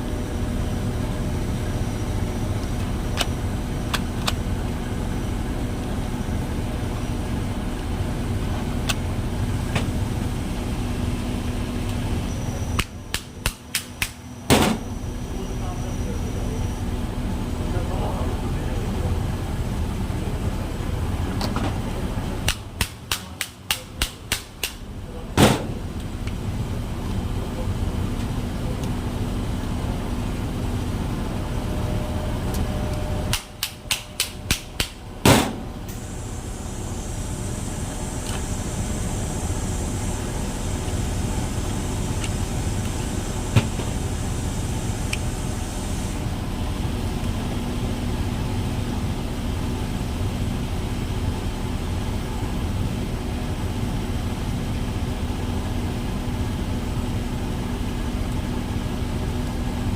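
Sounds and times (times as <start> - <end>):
steady running noise: 0.0 - 59.9
faint high whine: 9.2 - 13.1, 14.2 - 22.0.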